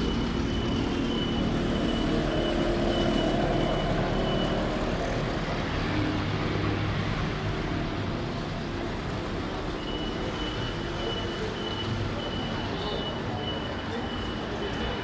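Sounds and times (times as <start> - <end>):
heavy vehicle engine running: 0.0 - 15.0
street traffic: 0.0 - 15.0.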